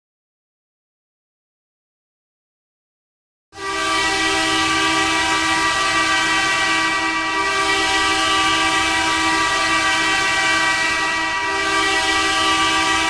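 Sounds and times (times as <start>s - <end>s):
hockey goal horn blast: 3.6s - 13.0s.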